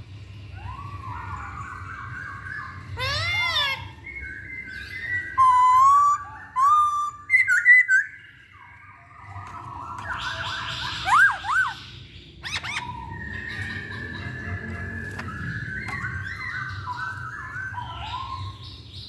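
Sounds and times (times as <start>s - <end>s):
bird singing whistled phrases: 0.5s - 18.9s.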